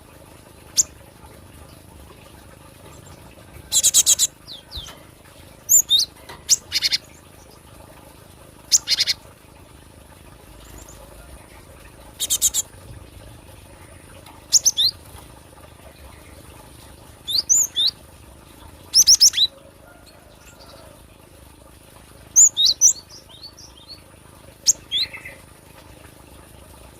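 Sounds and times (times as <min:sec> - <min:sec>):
bird chirping: 0:12.2 - 0:12.6, 0:14.5 - 0:15.0.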